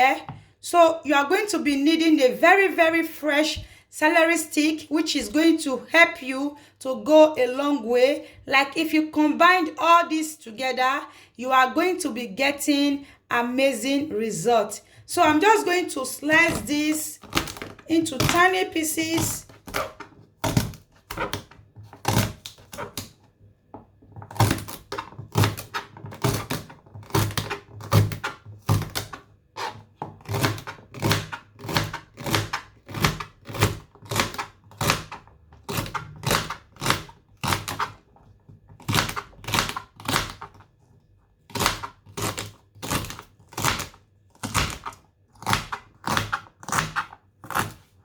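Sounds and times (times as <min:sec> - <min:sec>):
knife chopping celery on board: 0:15.2 - 0:23.1, 0:24.2 - 0:40.7, 0:41.5 - 0:47.9.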